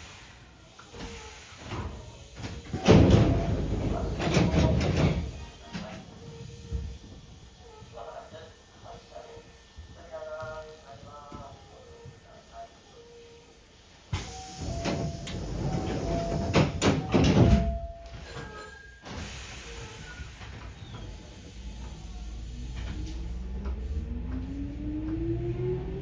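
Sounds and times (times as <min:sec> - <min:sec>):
train doors hissing air: 0:00.0 - 0:08.9, 0:13.8 - 0:25.9.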